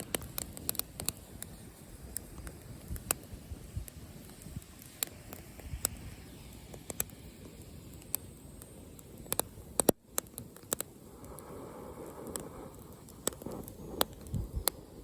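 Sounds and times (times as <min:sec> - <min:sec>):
campfire crackling and popping: 0:00.0 - 0:15.0.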